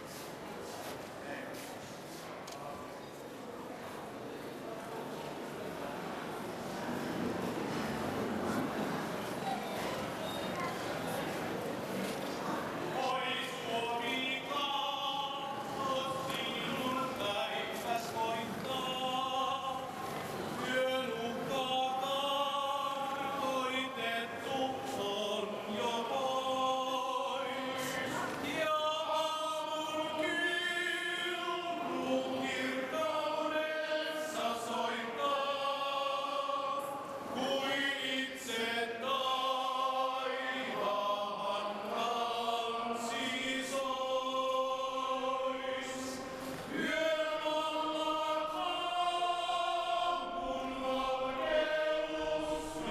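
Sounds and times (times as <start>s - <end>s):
choir singing: 13.0s - 52.9s.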